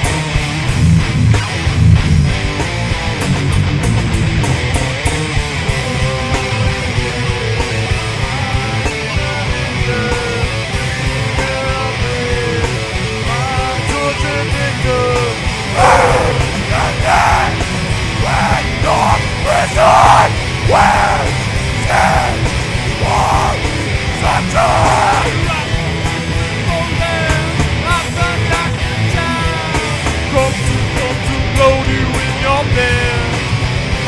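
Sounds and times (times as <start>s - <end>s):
hard rock band playing: 0.0s - 34.0s
lead guitar bending: 0.2s - 5.4s, 15.4s - 29.4s
person shouting vocals: 15.7s - 25.6s.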